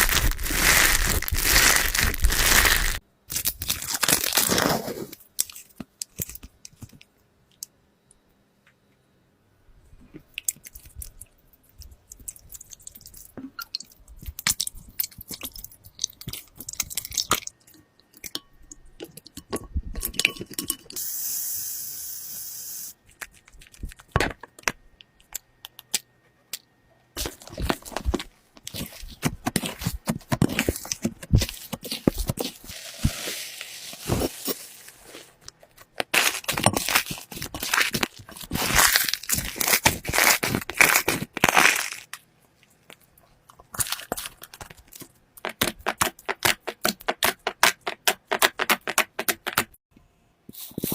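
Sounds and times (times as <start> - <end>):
slime crackling and crunching: 0.0 - 6.4, 27.2 - 42.2
steady hiss: 21.0 - 23.0.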